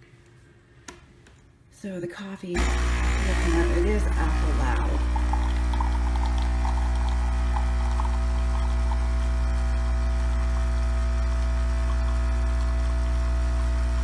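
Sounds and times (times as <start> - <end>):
coffee machine pump buzzing: 2.6 - 14.0.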